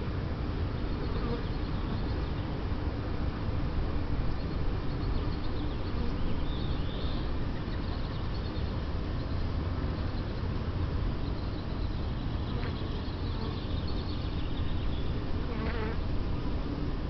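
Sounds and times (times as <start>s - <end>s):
honeybees buzzing: 12.3s - 13.8s, 14.8s - 16.4s.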